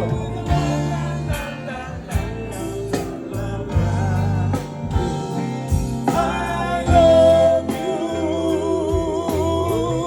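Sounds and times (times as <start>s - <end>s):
live reggae band playing: 0.0s - 10.0s.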